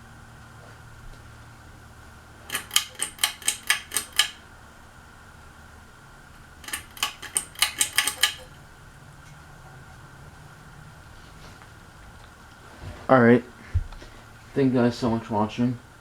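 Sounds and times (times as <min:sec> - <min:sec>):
ceiling fan humming: 0:00.0 - 0:16.0
sharp metallic clinks: 0:06.6 - 0:08.5.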